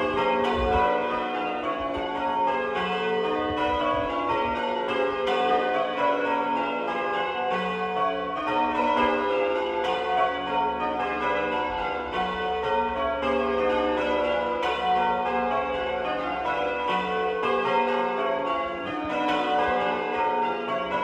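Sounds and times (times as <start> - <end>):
church bells change ringing: 0.0 - 21.0.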